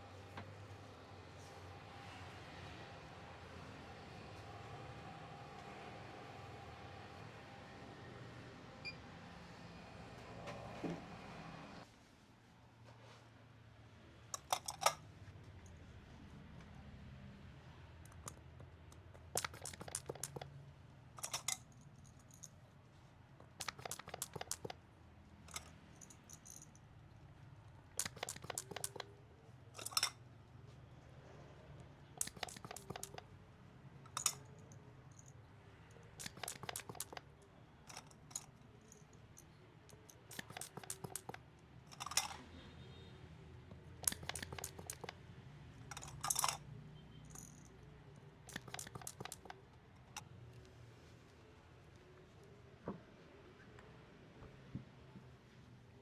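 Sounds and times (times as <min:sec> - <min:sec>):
rapid crackly clicks on skin: 0:18.1 - 0:20.5, 0:23.4 - 0:24.8, 0:28.0 - 0:29.1, 0:32.2 - 0:33.3, 0:36.0 - 0:37.3, 0:39.9 - 0:41.4, 0:44.0 - 0:45.2, 0:48.5 - 0:49.6.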